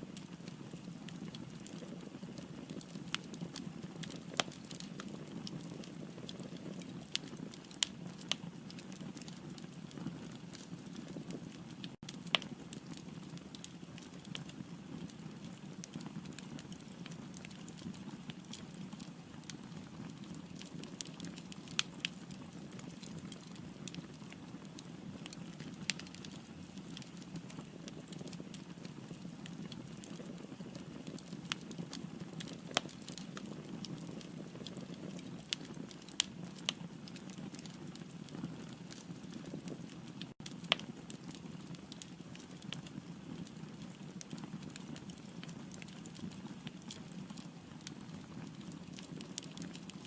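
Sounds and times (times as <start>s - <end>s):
wood crackling and popping: 0.1s - 50.0s.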